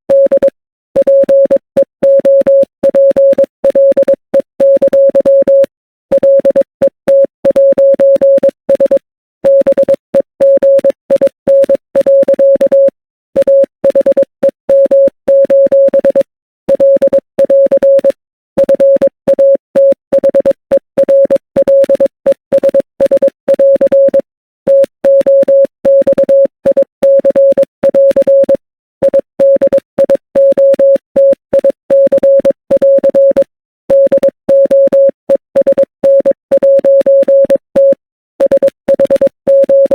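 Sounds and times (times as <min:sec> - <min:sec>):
morse code beeps: 0:00.1 - 0:39.9.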